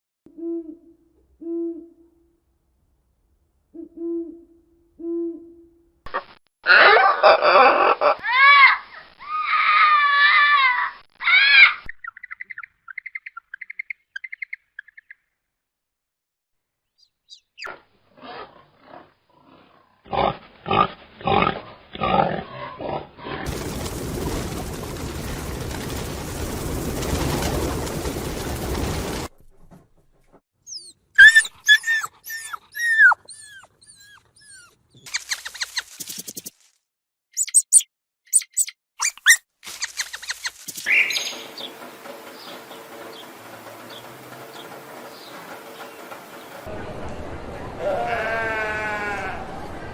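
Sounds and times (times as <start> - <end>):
animal high falling calls: 6.7 - 12.5, 30.7 - 36.0
small bird chirping: 11.9 - 15.4, 16.9 - 17.7, 30.7 - 36.6, 37.4 - 41.8
loud wavering cry: 30.7 - 34.7.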